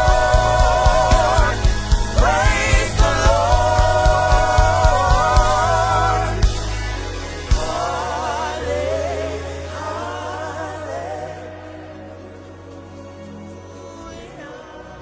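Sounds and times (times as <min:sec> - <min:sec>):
drum beat: 0:00.0 - 0:06.6.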